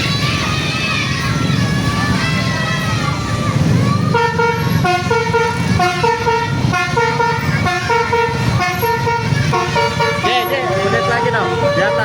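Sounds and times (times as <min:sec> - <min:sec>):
multi-tone bus horn melody: 0:04.0 - 0:12.0.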